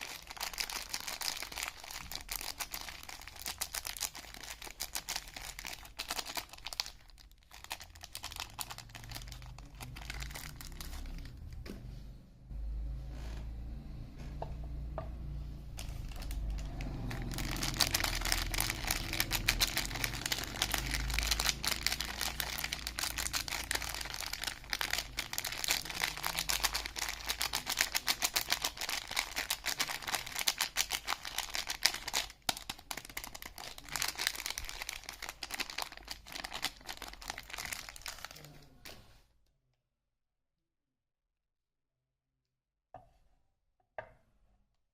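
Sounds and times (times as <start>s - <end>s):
soap wrapper crinkling: 0.0s - 11.5s, 15.8s - 39.0s.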